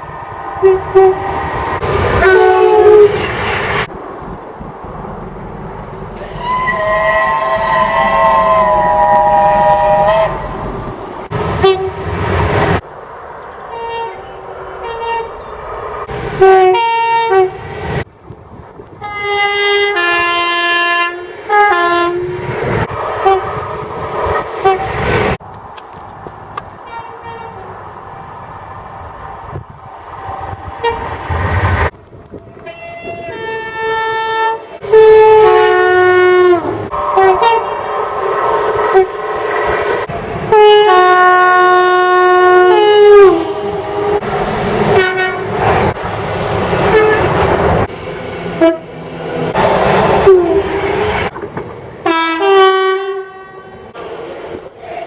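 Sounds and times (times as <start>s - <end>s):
two-tone train horns: 0.5s - 1.5s, 2.1s - 3.5s, 6.2s - 12.2s, 13.7s - 15.5s, 16.4s - 17.7s, 19.0s - 23.6s, 24.6s - 25.2s, 26.8s - 28.3s, 29.1s - 31.6s, 32.6s - 46.0s, 46.8s - 47.8s, 48.6s - 51.3s, 52.0s - 54.0s.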